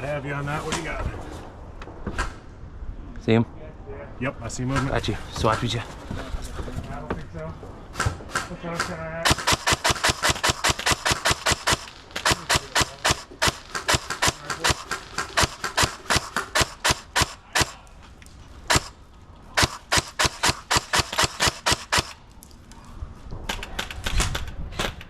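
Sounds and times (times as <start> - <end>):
airsoft gun rapid shots: 8.0 - 17.8, 18.7 - 19.0, 19.6 - 22.2.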